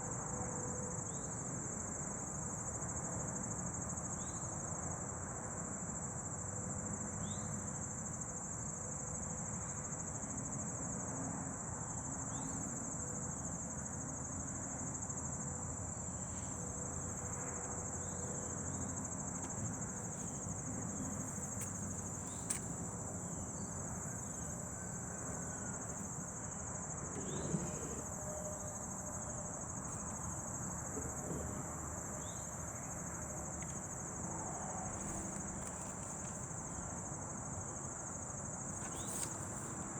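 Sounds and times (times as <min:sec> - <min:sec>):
crickets trilling: 0:00.0 - 0:39.9
click: 0:21.4 - 0:22.8.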